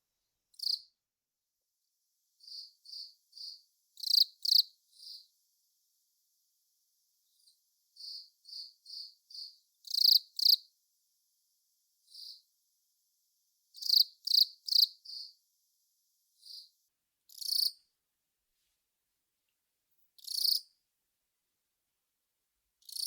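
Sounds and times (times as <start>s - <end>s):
cricket chirping: 0.5s - 0.9s, 2.3s - 10.8s, 11.7s - 12.6s, 13.4s - 17.8s, 20.2s - 20.7s.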